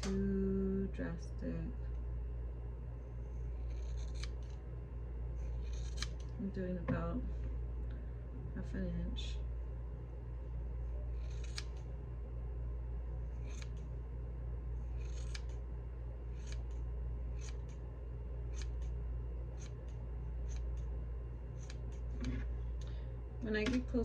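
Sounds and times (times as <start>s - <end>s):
steady low hum: 0.0s - 24.0s
scissors snipping hair: 3.6s - 4.6s, 5.5s - 6.3s, 11.2s - 11.8s, 13.4s - 13.8s, 15.0s - 15.6s, 16.4s - 16.8s, 17.4s - 17.8s, 18.5s - 18.9s, 19.5s - 20.9s, 21.6s - 22.3s.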